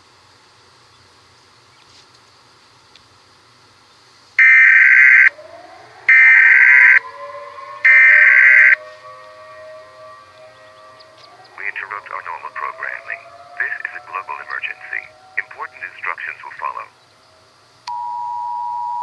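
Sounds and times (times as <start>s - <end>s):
screeching data bursts: 4.4s - 5.4s, 6.0s - 7.2s, 7.8s - 8.8s, 10.9s - 17.0s
siren winding up: 4.4s - 15.7s.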